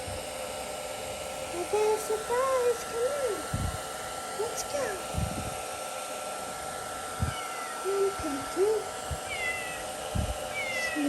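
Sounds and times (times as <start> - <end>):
faint hum: 6.9 - 11.0
kittens meowing: 7.2 - 8.5, 9.2 - 11.0.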